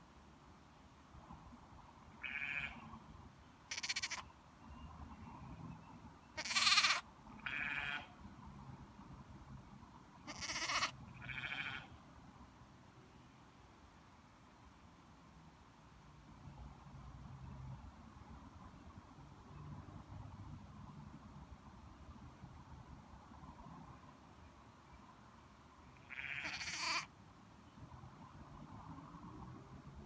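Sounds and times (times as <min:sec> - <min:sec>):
lamb bleating: 0:02.2 - 0:02.7, 0:03.7 - 0:04.2, 0:06.4 - 0:08.1, 0:10.3 - 0:11.8, 0:26.1 - 0:27.1.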